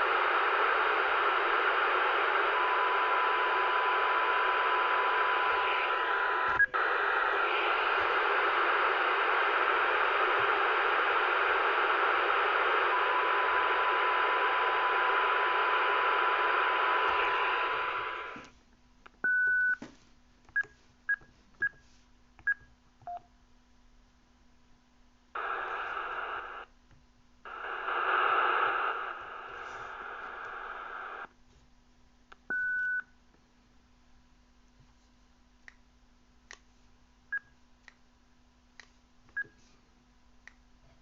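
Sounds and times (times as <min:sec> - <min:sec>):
radio speaker hiss: 0:00.0 - 0:18.5, 0:25.4 - 0:26.7, 0:27.4 - 0:31.3.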